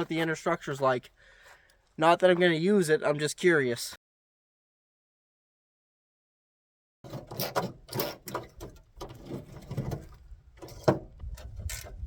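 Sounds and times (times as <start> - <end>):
metallic clicks and clanks: 7.1 - 12.0.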